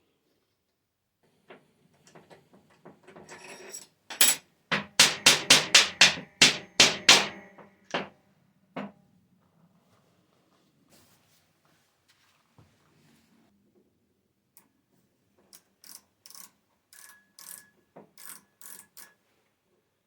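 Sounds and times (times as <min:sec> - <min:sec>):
ringing metal knocks: 0:04.1 - 0:08.1.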